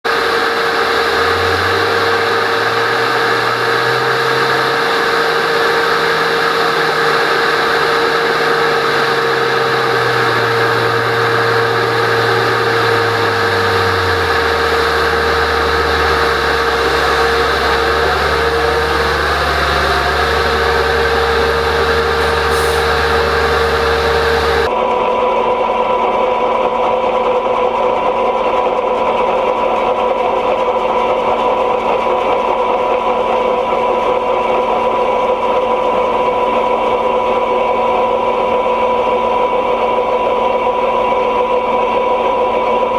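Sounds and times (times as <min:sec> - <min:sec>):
heavy farm machinery drone: 0:00.1 - 0:24.7.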